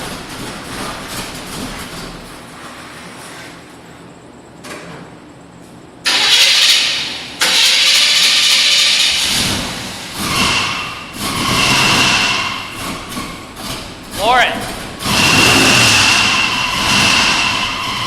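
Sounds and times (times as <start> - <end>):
engine revving: 6.1 - 18.0
engine starter cranking: 6.1 - 18.0.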